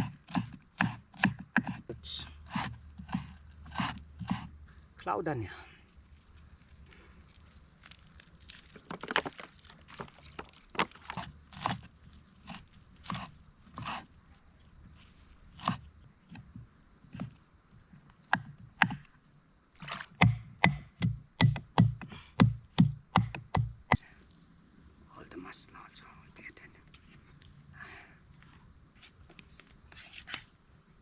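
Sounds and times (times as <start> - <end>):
knife chopping roots: 0.0 - 1.9, 2.5 - 4.5, 10.8 - 14.0, 19.8 - 24.0.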